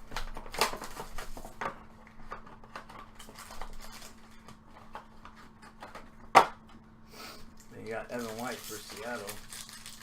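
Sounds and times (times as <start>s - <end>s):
faint steady hum: 0.0s - 10.0s.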